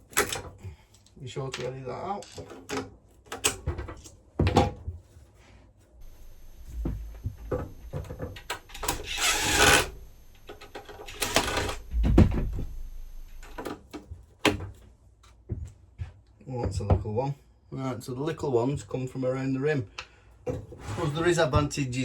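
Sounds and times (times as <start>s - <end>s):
metal scraping: 6.0s - 13.6s.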